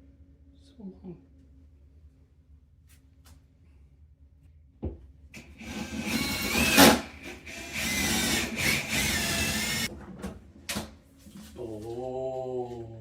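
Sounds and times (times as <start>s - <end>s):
power drill whining: 5.4s - 9.9s.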